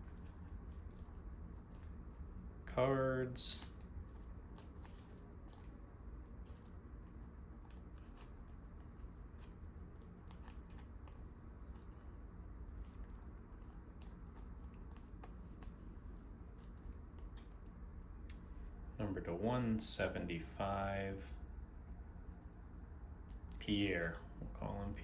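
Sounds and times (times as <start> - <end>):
low steady hum: 0.0 - 25.0
cards sliding and clicking: 3.5 - 5.8, 12.7 - 18.4.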